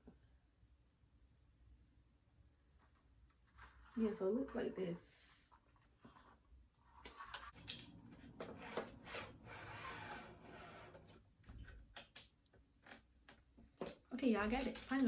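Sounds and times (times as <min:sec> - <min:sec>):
rubbing and scraping: 0:02.7 - 0:04.8, 0:05.6 - 0:11.9.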